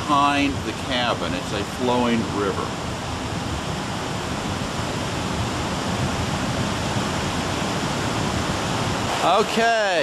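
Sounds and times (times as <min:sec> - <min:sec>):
floodwater rushing: 0:00.0 - 0:10.0.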